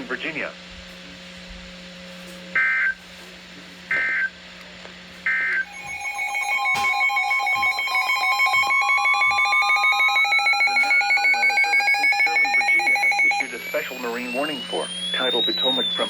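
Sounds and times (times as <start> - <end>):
screeching digital data bursts: 5.3 - 16.0.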